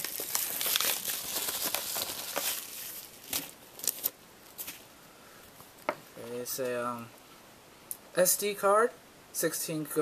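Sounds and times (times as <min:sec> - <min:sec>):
envelope tearing and crinkling: 0:00.0 - 0:04.8.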